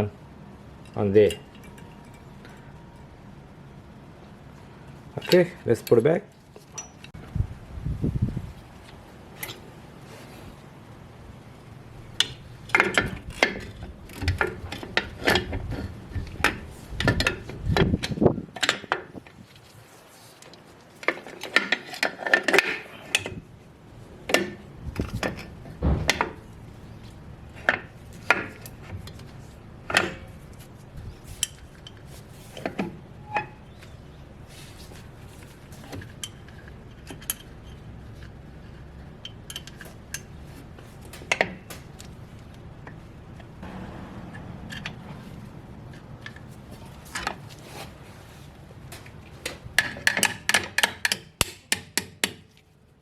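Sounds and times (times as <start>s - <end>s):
steady low hum: 22.8s - 49.8s.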